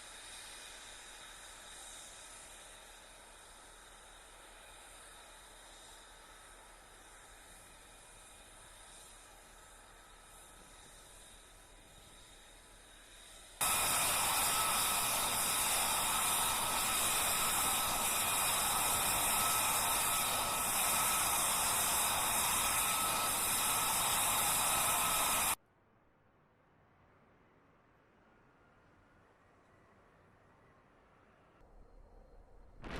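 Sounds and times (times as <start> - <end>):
jet engine roaring with whine: 0.0 - 25.6.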